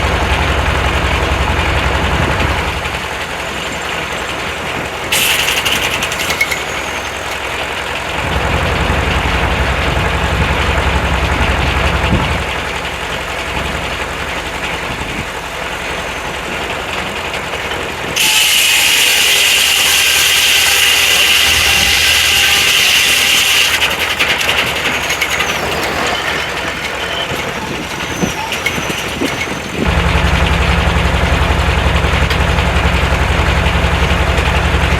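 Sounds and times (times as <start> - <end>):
engine low rumble: 0.0 - 34.9
high-pitched saw whine: 5.1 - 7.5, 18.0 - 34.2.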